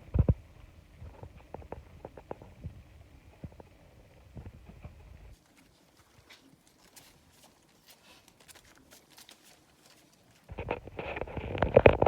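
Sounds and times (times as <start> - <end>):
puppies lapping and smacking: 4.8 - 12.0.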